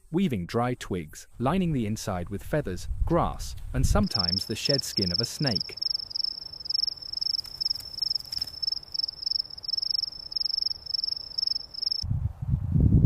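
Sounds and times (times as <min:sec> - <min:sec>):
insect trilling: 0:04.0 - 0:12.0.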